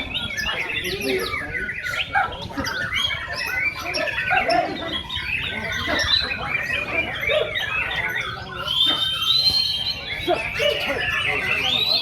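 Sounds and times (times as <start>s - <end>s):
songbirds singing: 0.0s - 12.0s.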